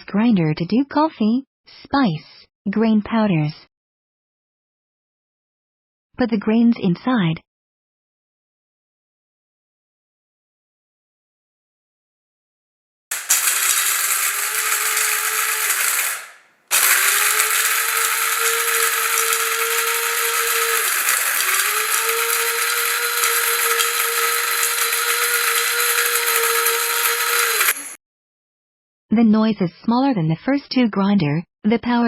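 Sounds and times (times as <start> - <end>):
grain grinder motor whine: 13.1 - 28.0
grinding hiss: 13.1 - 28.0.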